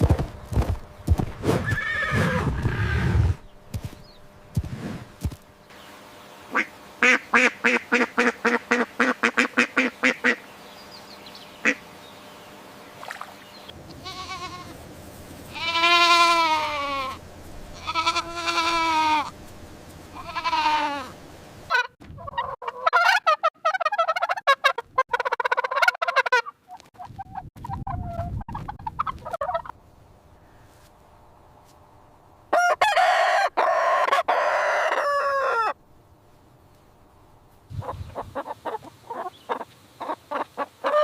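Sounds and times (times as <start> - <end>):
short quacking calls: 6.5 - 10.4
long wavering bleating calls: 13.9 - 14.8, 15.5 - 17.2, 17.8 - 19.4, 20.1 - 21.2.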